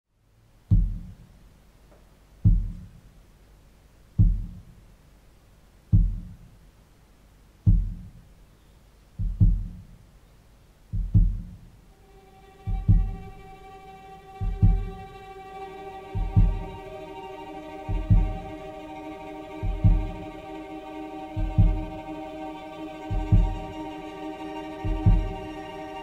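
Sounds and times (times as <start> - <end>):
cello bass thumps: 0.7 - 1.2, 2.4 - 3.0, 4.1 - 4.8, 5.9 - 6.5, 7.7 - 8.2, 9.2 - 9.9, 10.9 - 11.8, 12.7 - 13.4, 14.4 - 15.2, 16.2 - 16.9, 17.9 - 18.6, 19.6 - 20.3, 21.4 - 22.0, 23.1 - 23.7, 24.8 - 25.4
sustained bowed cello note: 12.0 - 26.0.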